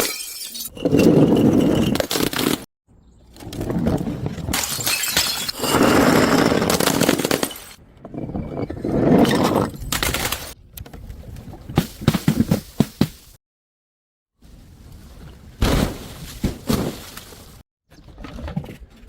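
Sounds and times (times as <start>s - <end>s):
glass bottles shattering: 0.0s - 2.6s, 4.5s - 7.8s.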